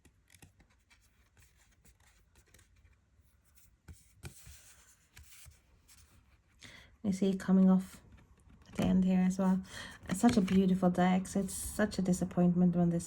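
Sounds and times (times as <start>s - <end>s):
cards rustling: 0.0s - 6.5s, 10.1s - 10.9s.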